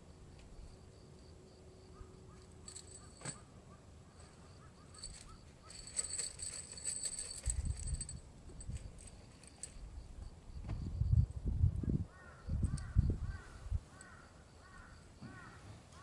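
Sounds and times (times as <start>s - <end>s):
metallic clicking and rattling: 2.4s - 3.4s, 5.0s - 9.8s
wind on microphone: 10.6s - 13.9s.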